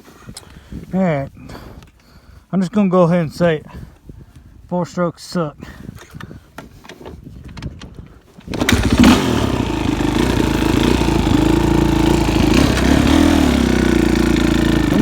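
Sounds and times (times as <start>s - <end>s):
motorcycle engine idling: 8.5s - 15.0s.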